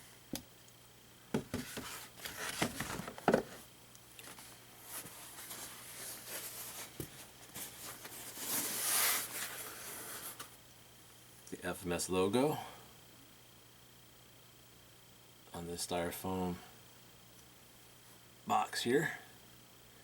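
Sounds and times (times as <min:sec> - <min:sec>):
cardboard scraping and rustling: 0:01.4 - 0:03.6, 0:04.2 - 0:10.5.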